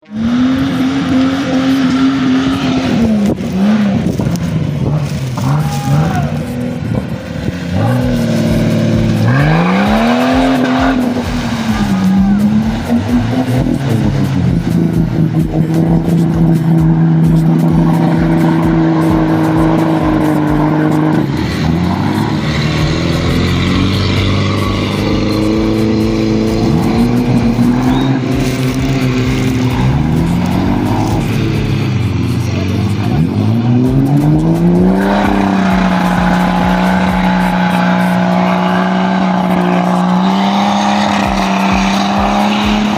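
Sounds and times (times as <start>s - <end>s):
car engine revving: 0.0s - 42.9s.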